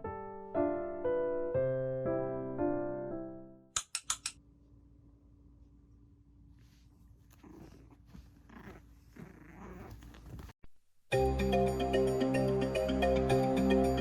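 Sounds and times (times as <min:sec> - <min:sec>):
puppy growling softly: 0:06.6 - 0:10.6.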